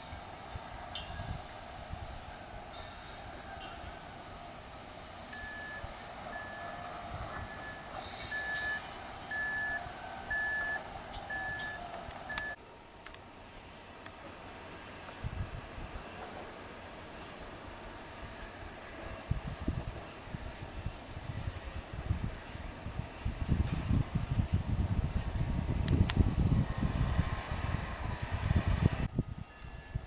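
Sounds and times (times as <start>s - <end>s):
high-pitched hiss: 0.0s - 30.0s
short electronic beeps: 5.4s - 12.6s
wind buffeting microphone: 19.2s - 30.0s.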